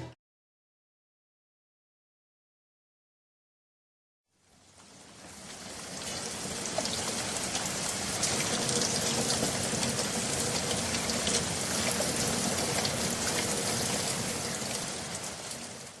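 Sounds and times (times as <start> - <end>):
rain falling with patter: 4.3 - 16.0.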